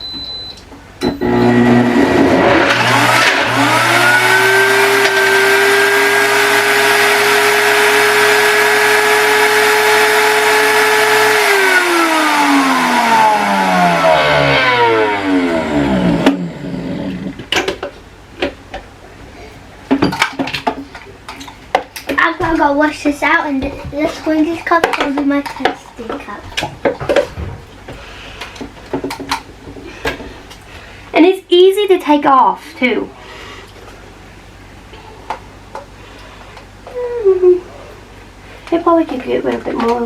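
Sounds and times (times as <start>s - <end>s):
blender motor grinding: 1.2s - 17.4s.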